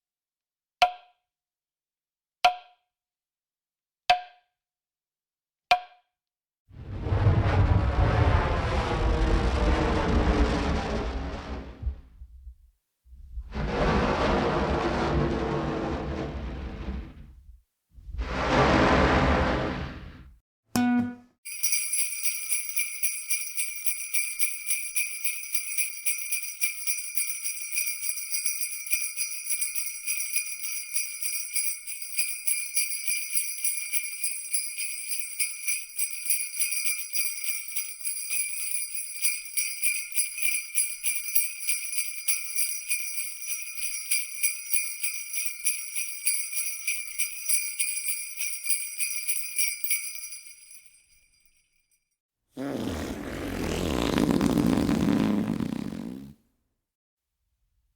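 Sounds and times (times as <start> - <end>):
jingle bells shaken: 21.5 - 51.7.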